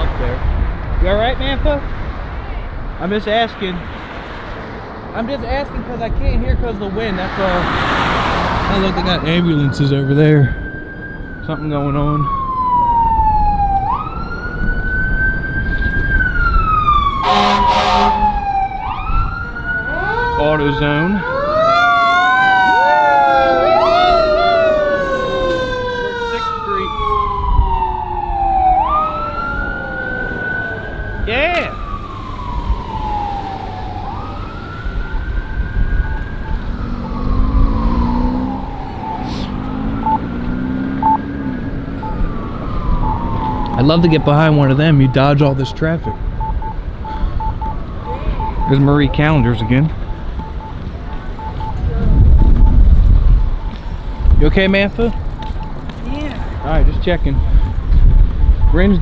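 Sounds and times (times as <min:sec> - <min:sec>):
emergency siren wailing: 0:02.7 - 0:59.0
horn blasts: 0:17.1 - 0:18.5, 0:36.0 - 0:55.6
wind on microphone: 0:23.8 - 0:59.0.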